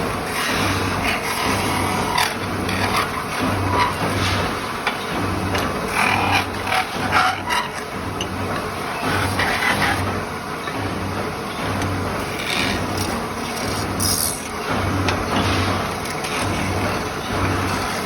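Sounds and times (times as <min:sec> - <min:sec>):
lathe humming: 0:00.0 - 0:18.0
tool scraping sheet metal: 0:00.2 - 0:07.9.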